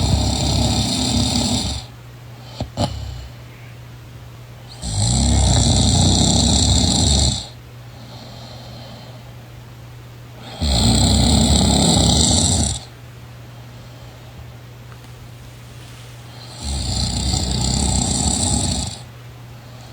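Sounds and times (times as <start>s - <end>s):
person snoring: 0.0s - 3.4s, 4.7s - 7.6s, 10.4s - 12.9s, 16.3s - 19.1s.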